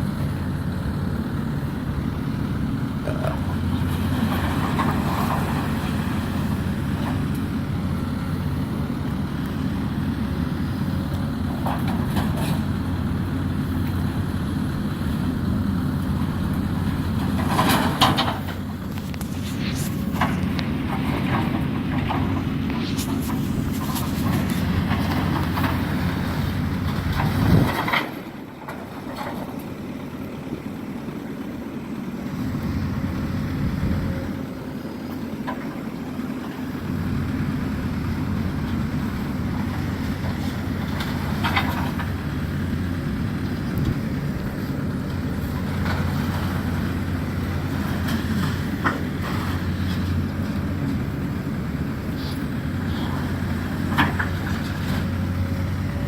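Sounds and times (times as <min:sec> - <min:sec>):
excavator diesel engine running: 0:00.0 - 0:56.0
knocks and scrapes on debris: 0:17.2 - 0:26.2.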